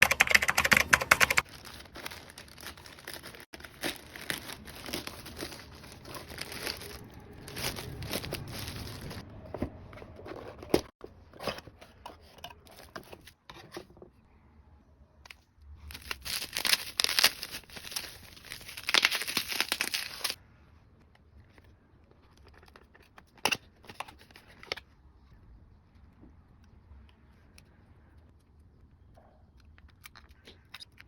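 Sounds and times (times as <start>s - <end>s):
packaging crinkling and rustling: 1.4s - 9.2s, 15.9s - 20.4s
packaging tearing: 1.4s - 9.2s, 15.9s - 20.4s.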